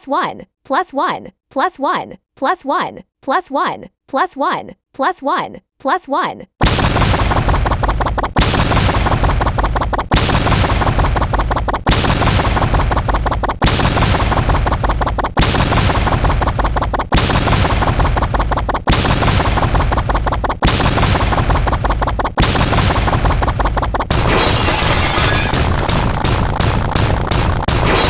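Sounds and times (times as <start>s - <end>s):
rapid gunfire-like cracks: 6.6s - 28.0s.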